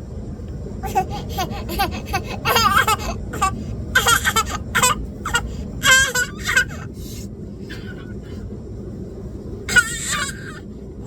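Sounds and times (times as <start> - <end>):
airliner cabin rumble: 0.0 - 11.0
baby crying: 0.8 - 6.9, 9.7 - 10.6.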